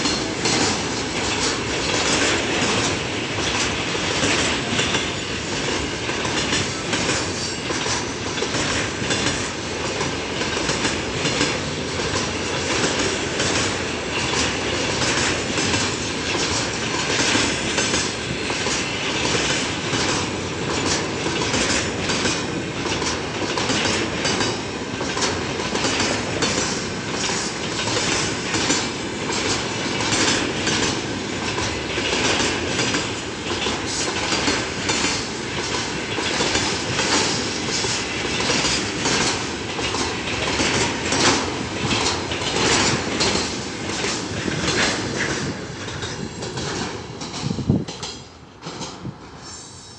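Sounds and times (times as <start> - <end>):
train wheels clattering over rail joints: 0.0 - 49.4
wheels squealing on rail: 4.7 - 8.3, 49.0 - 49.9.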